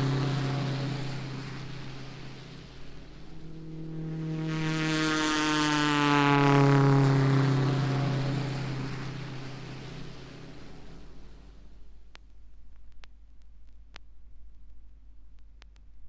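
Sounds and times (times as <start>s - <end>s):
propeller aircraft passing by: 0.0s - 11.6s.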